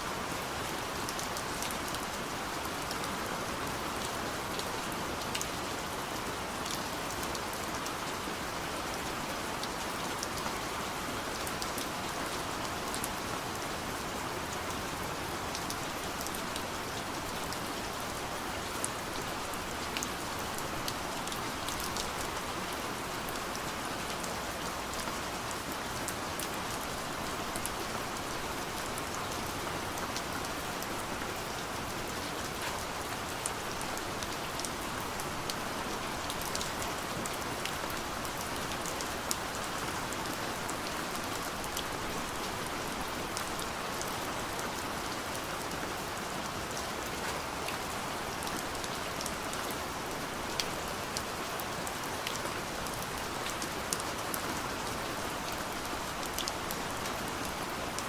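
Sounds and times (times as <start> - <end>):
soft rain on a window: 0.0 - 58.0.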